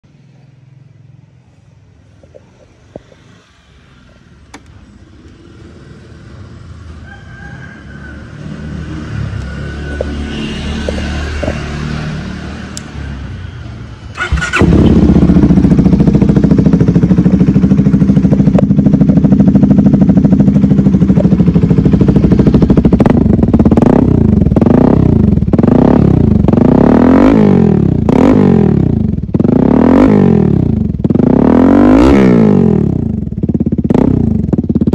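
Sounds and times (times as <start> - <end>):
motorcycle engine idling: 13.7 - 27.0, 32.8 - 34.9
motorcycle throttle blips: 14.1 - 26.6
low rumble: 14.6 - 25.6.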